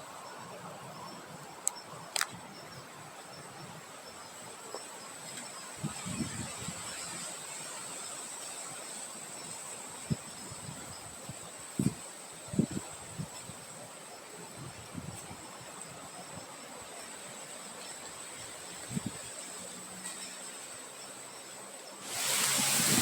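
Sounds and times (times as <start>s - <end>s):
cricket chirps: 0.0s - 23.0s
high insect drone: 0.0s - 23.0s
wind hiss: 0.0s - 23.0s
sharp clicks: 1.6s - 2.4s.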